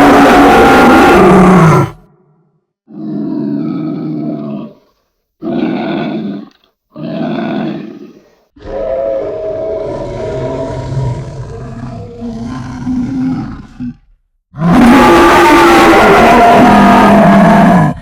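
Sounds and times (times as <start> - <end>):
bear roaring: 0.0 - 2.1, 2.9 - 4.8, 5.4 - 18.0
bear growls: 5.4 - 18.0.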